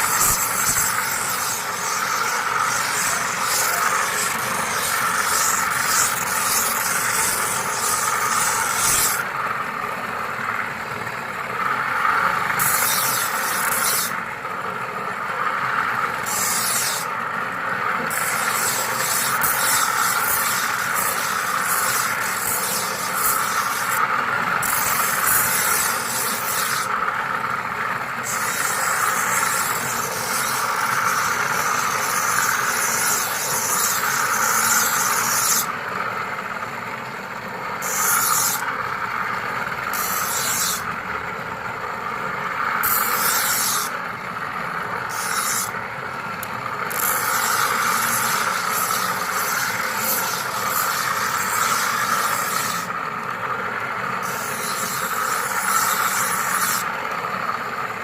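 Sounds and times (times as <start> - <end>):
knife scraping on sharpener: 0.0 - 9.2, 12.6 - 14.2, 16.2 - 17.1, 18.1 - 26.9, 28.2 - 35.7, 37.8 - 38.7, 39.9 - 40.9, 42.8 - 44.0, 45.1 - 45.8, 46.9 - 52.9, 54.2 - 56.9.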